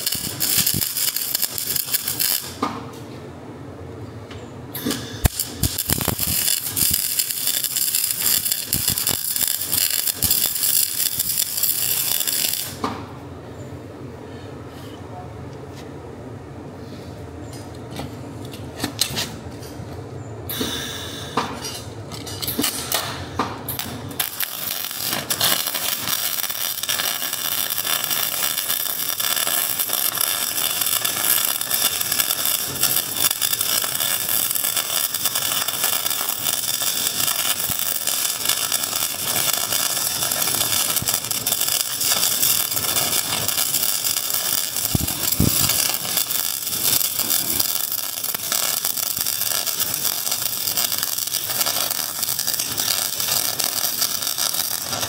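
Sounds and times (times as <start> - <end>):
metalworking tool harsh crackling: 0.0 - 2.6, 4.8 - 12.9, 23.7 - 55.0.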